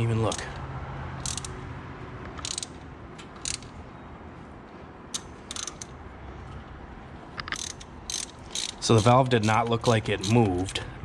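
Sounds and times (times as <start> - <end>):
socket ratchet clicking: 1.2 - 1.6, 2.3 - 3.8, 5.1 - 6.0, 7.4 - 10.8.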